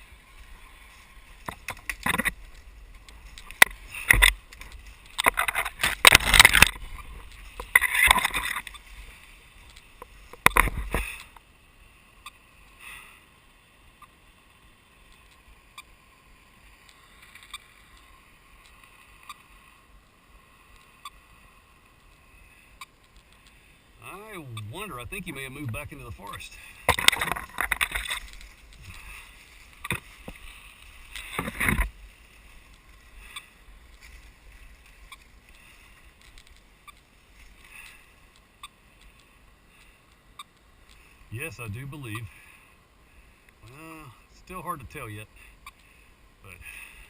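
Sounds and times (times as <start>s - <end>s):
rustling of undergrowth: 0.0s - 47.0s
footsteps: 24.7s - 38.1s.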